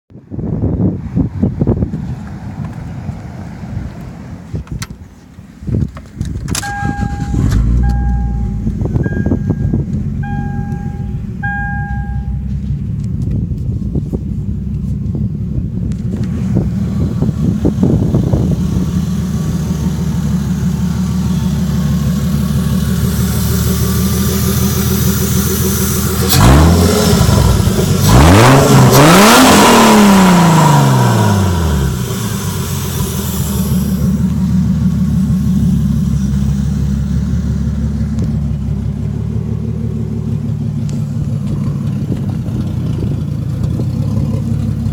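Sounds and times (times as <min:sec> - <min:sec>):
beeping tone: 0:06.6 - 0:12.6
car engine revving: 0:06.6 - 0:44.9.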